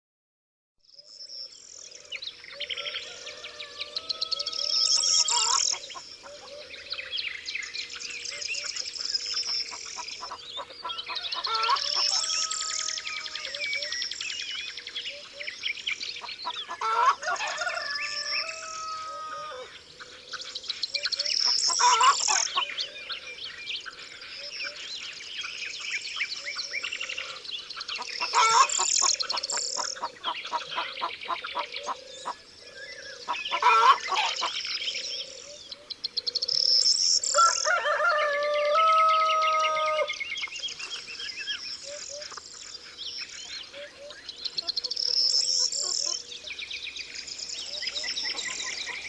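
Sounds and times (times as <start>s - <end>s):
songbirds singing: 0.8s - 49.0s
poultry calls: 2.0s - 7.1s, 8.3s - 14.0s, 16.2s - 23.3s, 26.5s - 36.6s, 41.8s - 49.0s.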